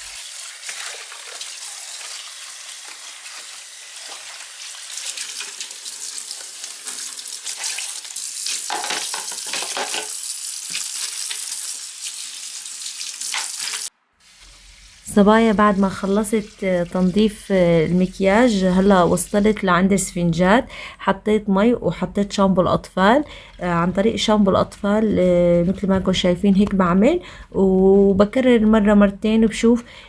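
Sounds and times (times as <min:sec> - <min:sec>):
water splashes: 0:00.0 - 0:13.9
water hissing: 0:00.0 - 0:17.6.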